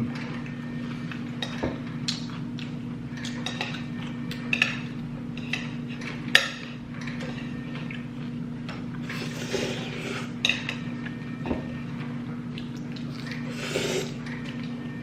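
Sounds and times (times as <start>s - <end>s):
utensils clinking on dishes: 0.1s - 12.1s.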